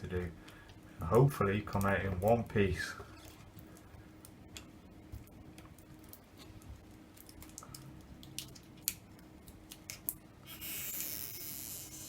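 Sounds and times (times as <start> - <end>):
low steady hum: 0.0 - 12.0
adhesive tab clicks and crackles: 3.2 - 11.9.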